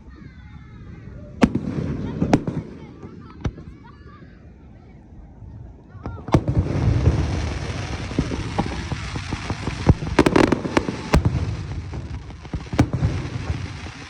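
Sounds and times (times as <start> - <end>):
fireworks crackling: 1.3 - 3.9, 5.8 - 14.0
loud firework bangs: 1.4 - 3.8, 6.0 - 14.0
fireworks bursting: 1.4 - 3.9, 6.0 - 14.0
fireworks cracking: 1.4 - 3.9, 5.8 - 14.0.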